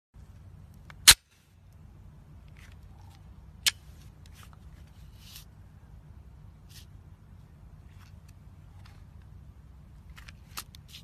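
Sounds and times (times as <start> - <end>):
steady low rumble: 0.2 - 11.0
handling clicks and rustles: 6.6 - 11.0.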